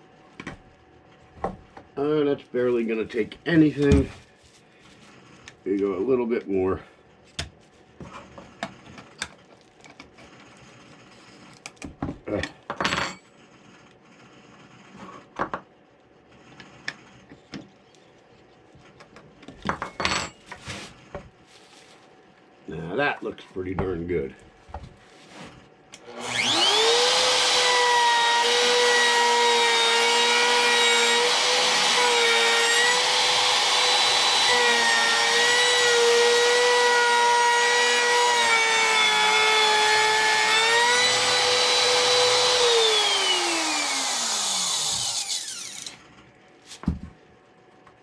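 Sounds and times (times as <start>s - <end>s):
electric router whining: 26.0s - 46.0s
router cutting into wood: 26.0s - 46.0s.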